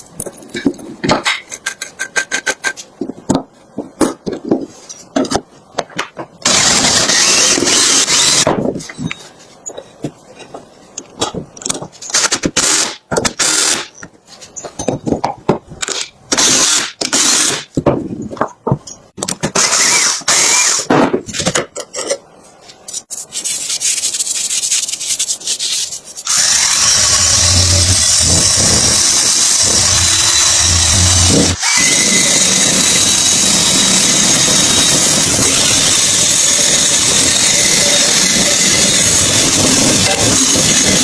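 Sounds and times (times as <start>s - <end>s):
power tool bursts: 19.6s - 20.9s, 26.3s - 34.9s
small engine running: 26.7s - 33.2s.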